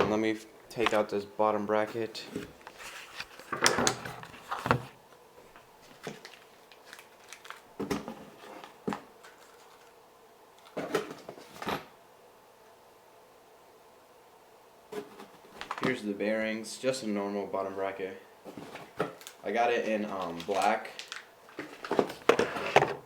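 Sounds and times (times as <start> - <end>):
packaging rustling and clicking: 0.7 - 1.1, 2.3 - 10.0, 15.0 - 16.0, 18.5 - 19.4, 20.0 - 23.0.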